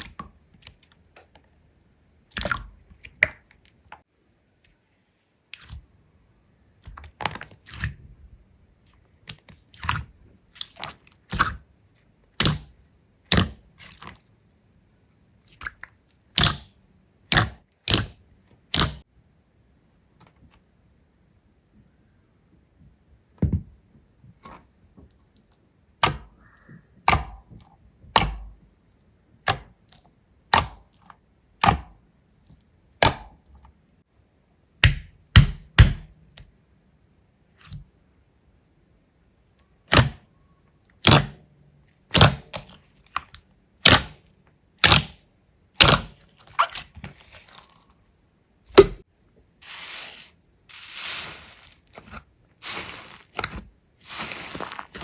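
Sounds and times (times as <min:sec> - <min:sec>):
slime popping: 0:44.8 - 0:45.2, 0:45.8 - 0:47.6
slime crackling: 0:49.7 - 0:55.0.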